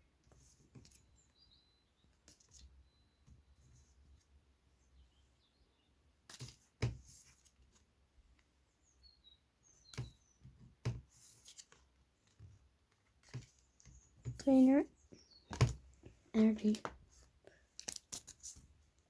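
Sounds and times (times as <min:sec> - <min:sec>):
faint bird chirps: 0:00.9 - 0:06.0, 0:08.7 - 0:10.6, 0:13.7 - 0:15.6.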